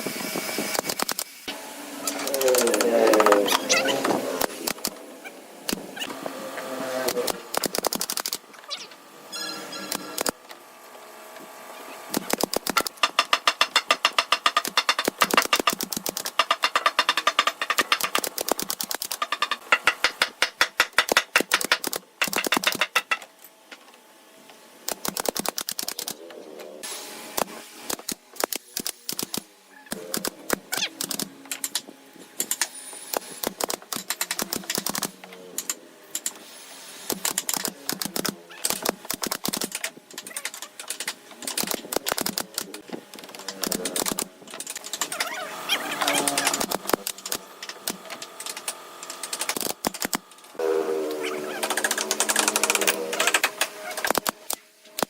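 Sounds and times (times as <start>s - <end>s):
sharp clicks and knocks on wood: 12.1s - 23.9s.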